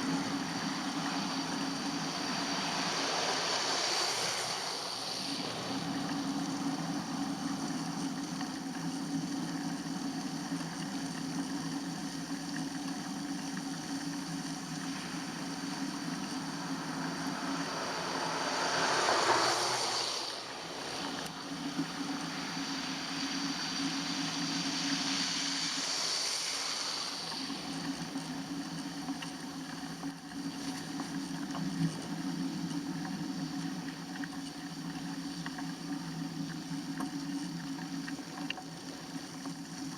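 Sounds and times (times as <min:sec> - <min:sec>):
tyre hiss: 0:00.0 - 0:08.0, 0:14.7 - 0:29.1
bicycle riding low hum: 0:00.0 - 0:39.9
wind: 0:00.0 - 0:39.9.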